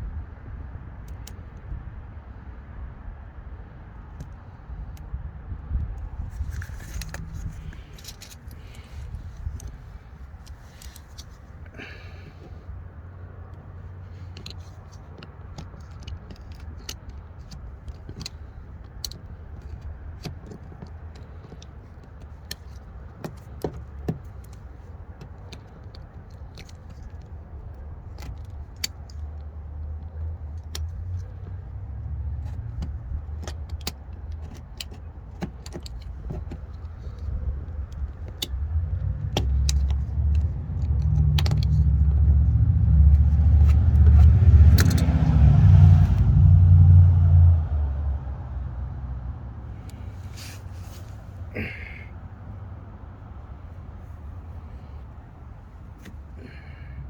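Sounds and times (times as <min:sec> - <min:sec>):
low vehicle rumble: 0:00.0 - 0:57.0
light clicks and rattles: 0:03.9 - 0:47.0.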